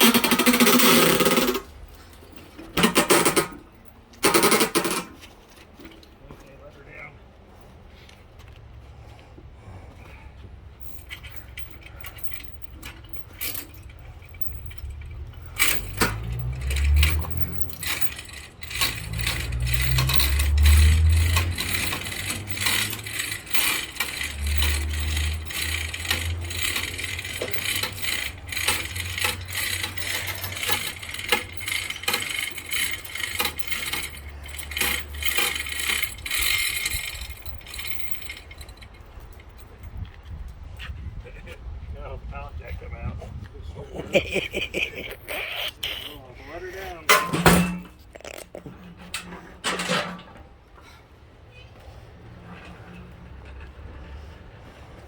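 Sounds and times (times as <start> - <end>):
chain rattling and clanking: 0.0 - 6.2, 10.0 - 40.8, 43.9 - 50.5.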